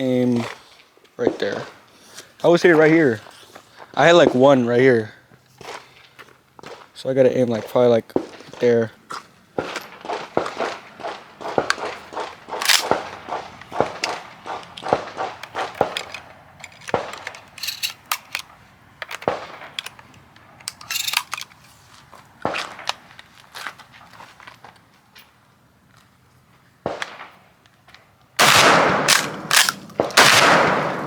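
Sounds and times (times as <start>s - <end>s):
gunshots: 9.6s - 16.2s, 28.4s - 31.0s.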